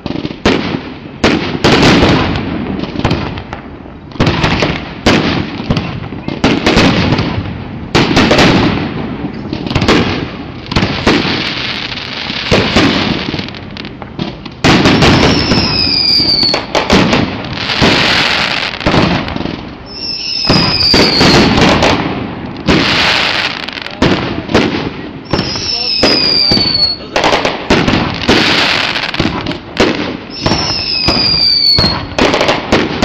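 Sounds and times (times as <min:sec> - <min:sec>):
fireworks bursting and crackling: 0:00.0 - 0:33.0
firework whistles: 0:14.7 - 0:16.8, 0:19.8 - 0:22.0, 0:25.2 - 0:27.4, 0:30.2 - 0:32.6.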